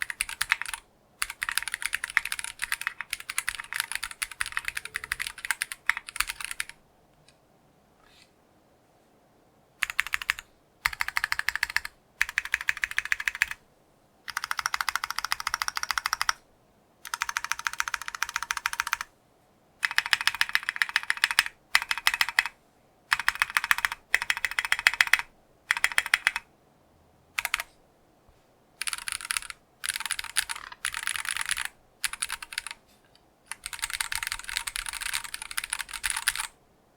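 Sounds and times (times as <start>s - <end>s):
typing on mechanical keyboard: 0.0s - 6.8s, 9.8s - 13.6s, 14.3s - 16.4s, 17.0s - 19.1s, 19.8s - 26.5s, 27.4s - 27.7s, 28.8s - 32.8s, 33.5s - 36.6s.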